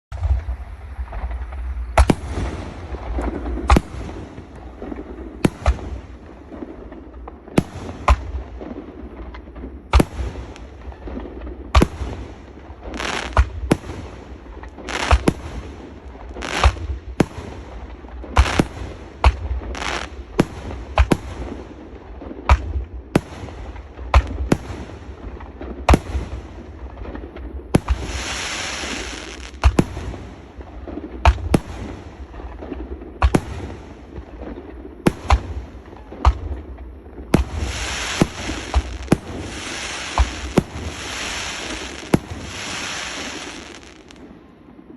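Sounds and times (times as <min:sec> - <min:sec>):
firework hissing: 0:11.9 - 0:17.6, 0:18.4 - 0:20.2, 0:27.8 - 0:30.4, 0:37.3 - 0:44.2.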